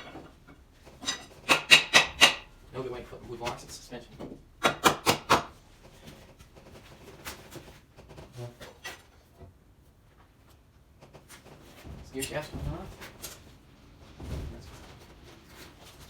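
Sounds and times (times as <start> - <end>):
hand tools knocking on metal: 0.0 - 2.5.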